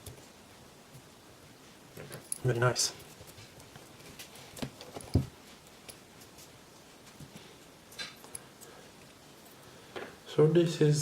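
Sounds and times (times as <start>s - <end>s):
soft rustle: 0.2s - 7.8s.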